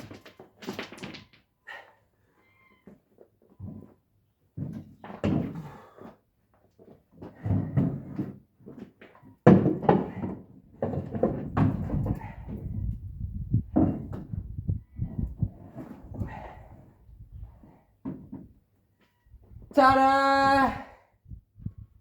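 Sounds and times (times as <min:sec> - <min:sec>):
heavy clunks and thumps: 0:04.6 - 0:06.0, 0:09.4 - 0:16.6.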